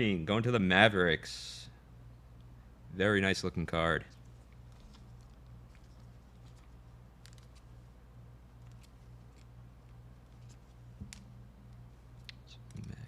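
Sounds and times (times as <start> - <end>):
low electrical hum: 0.0 - 13.0
trading cards being handled: 4.1 - 13.0.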